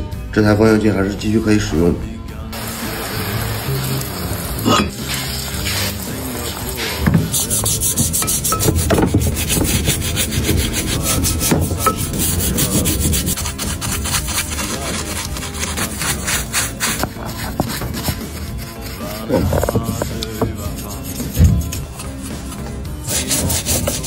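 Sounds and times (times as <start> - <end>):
rapid rubbing strokes: 4.9 - 24.0.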